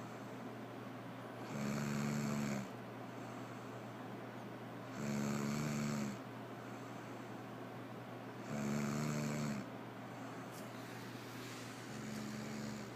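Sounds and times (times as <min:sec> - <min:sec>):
faint low hum: 0:00.0 - 0:12.9
person snoring: 0:01.5 - 0:02.7, 0:04.9 - 0:06.2, 0:08.4 - 0:09.7, 0:11.9 - 0:12.9.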